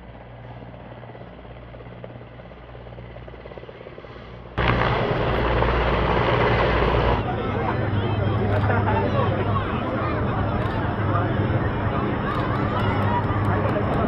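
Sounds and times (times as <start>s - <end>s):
aircraft engine hum: 0.0s - 14.0s.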